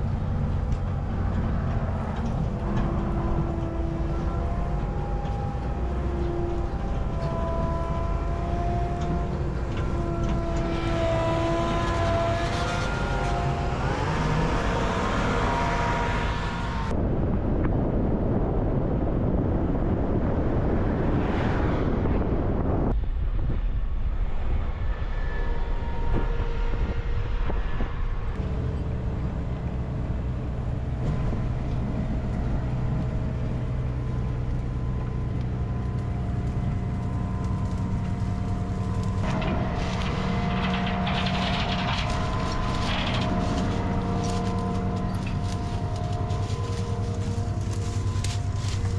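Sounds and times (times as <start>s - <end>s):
heavy harvest machinery running: 0.0s - 16.9s, 28.4s - 48.9s.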